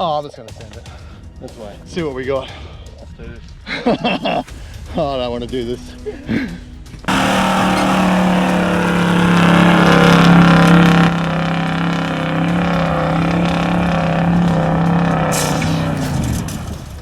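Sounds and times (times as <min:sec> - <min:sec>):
off-road vehicle engine revving: 0:07.1 - 0:17.0.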